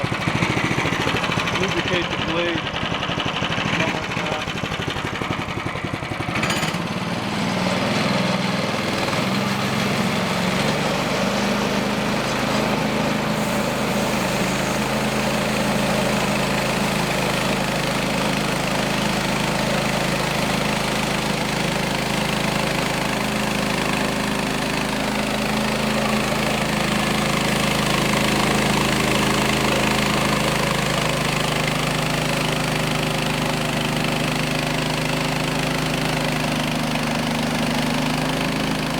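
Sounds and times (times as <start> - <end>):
small gas engine running: 0.0 - 38.9
bandsaw blade cutting wood: 6.2 - 33.1.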